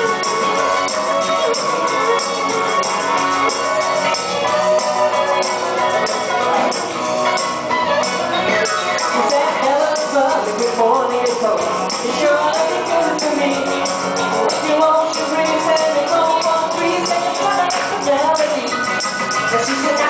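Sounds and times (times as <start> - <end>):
tambourine jingling: 0.0 - 20.0
voices singing over a beat: 0.0 - 20.0.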